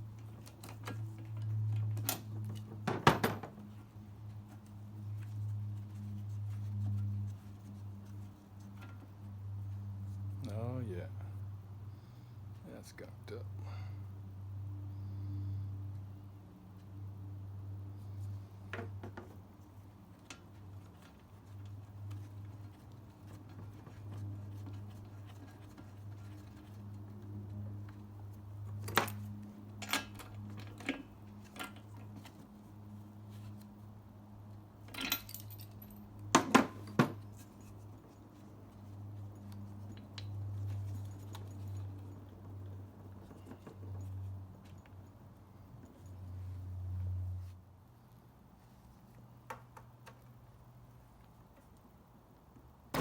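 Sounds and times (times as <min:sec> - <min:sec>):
steady low hum: 0:00.0 - 0:34.5.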